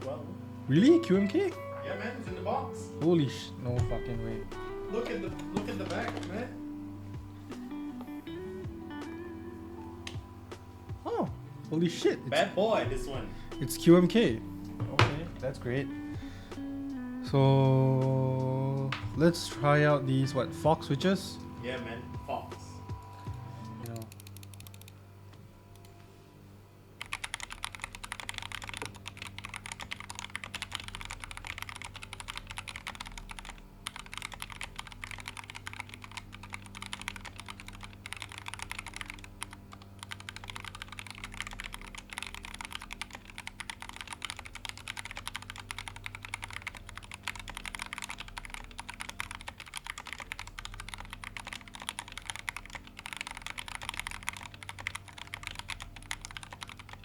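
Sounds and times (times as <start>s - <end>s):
mechanical keyboard typing: 5.1s - 6.4s, 23.8s - 24.9s, 27.0s - 57.0s.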